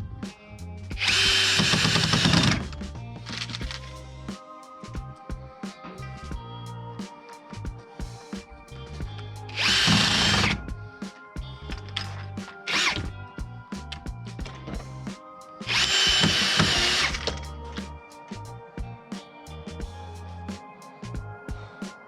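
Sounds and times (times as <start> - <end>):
background music: 0.0 - 22.0
power drill running: 1.0 - 2.6, 9.6 - 10.6, 12.7 - 13.0, 15.7 - 17.3.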